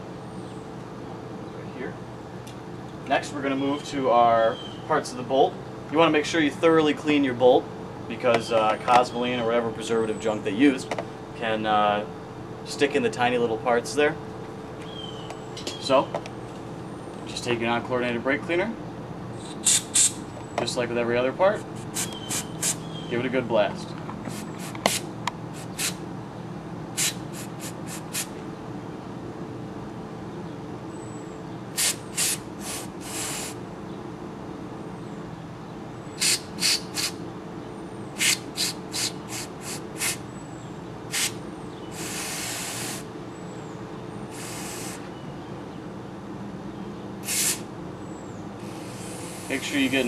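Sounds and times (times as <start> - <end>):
aerosol can spraying: 19.4 - 20.2, 21.8 - 22.8, 24.2 - 26.0, 27.0 - 28.3, 31.8 - 33.6, 36.2 - 37.2, 38.2 - 40.2, 41.1 - 41.4, 42.0 - 43.0, 44.3 - 45.0, 47.2 - 47.6, 48.6 - 49.7.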